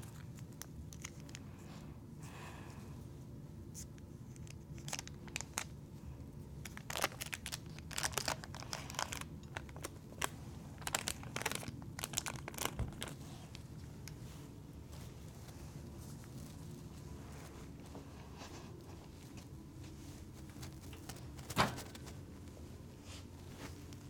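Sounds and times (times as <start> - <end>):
low steady hum: 0.0 - 24.0
paper wrapper crinkling and tearing: 4.3 - 5.8, 6.6 - 13.2.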